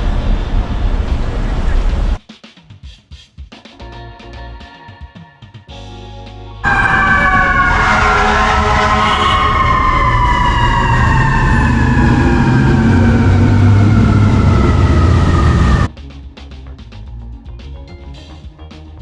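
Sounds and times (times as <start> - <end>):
low rumble of traffic: 0.0 - 2.2, 6.6 - 17.4
emergency vehicle siren: 6.6 - 15.9.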